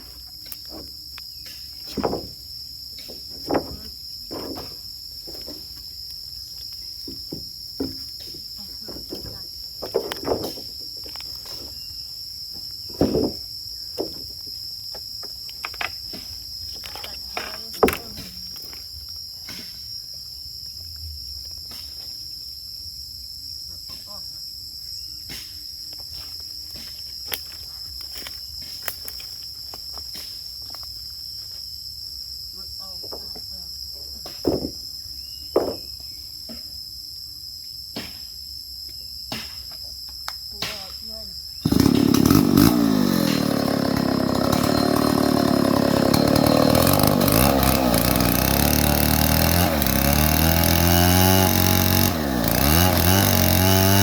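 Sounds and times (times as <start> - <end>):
high-pitched insect chorus: 0.0 - 42.4
loud thumps: 1.8 - 2.5, 12.9 - 14.2
short knocks and thumps: 1.8 - 5.8, 7.0 - 10.8, 12.9 - 14.3, 34.2 - 34.9, 35.5 - 36.6.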